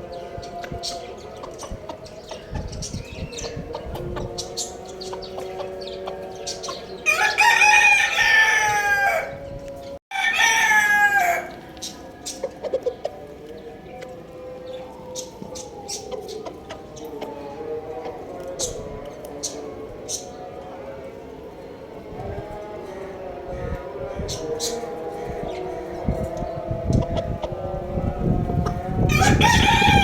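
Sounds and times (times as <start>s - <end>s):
high chirps of chicks or birds: 0.0s - 17.7s, 28.4s - 30.0s
rooster crowing: 7.0s - 9.5s, 10.1s - 11.6s, 29.0s - 30.0s.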